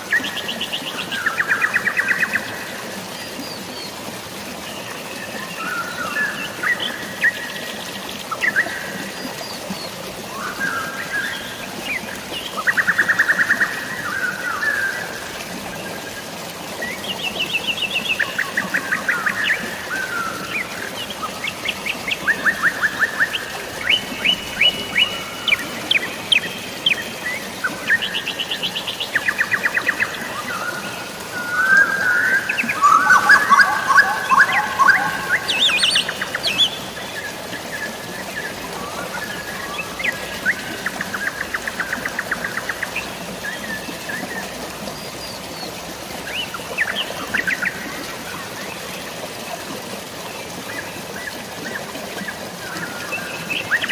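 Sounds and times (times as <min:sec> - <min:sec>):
drizzling rain: 0:00.0 - 0:53.9
flowing water: 0:00.0 - 0:53.9
birds chirping and trilling: 0:17.0 - 0:44.5.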